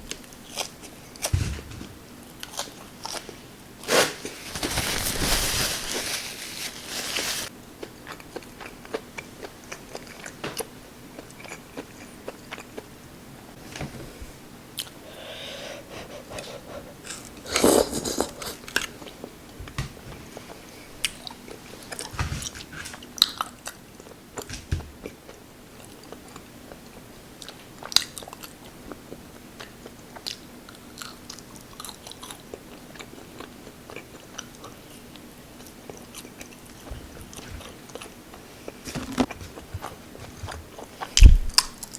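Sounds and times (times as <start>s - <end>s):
chewing and crunching: 2.4s - 3.4s, 7.8s - 12.9s, 20.3s - 41.9s.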